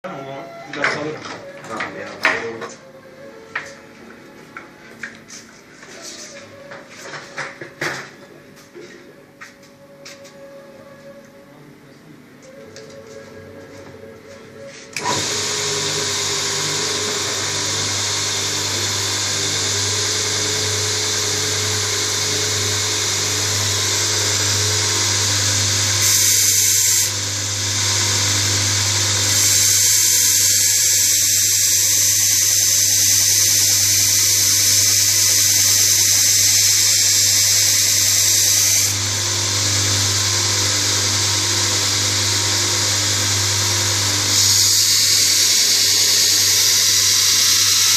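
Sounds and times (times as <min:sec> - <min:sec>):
high hissing grind: 0:14.6 - 0:39.5, 0:40.6 - 0:47.9
belt grinder humming: 0:15.0 - 0:47.9.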